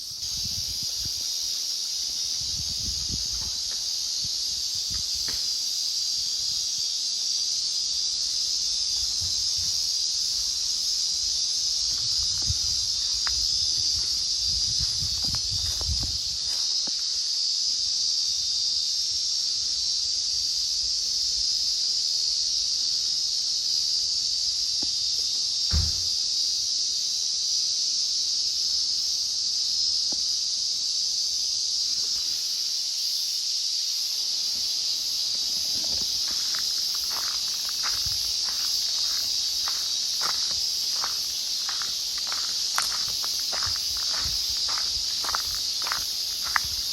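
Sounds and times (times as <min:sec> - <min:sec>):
cicadas singing: 0:00.0 - 0:46.9
dull thump: 0:25.7 - 0:26.1.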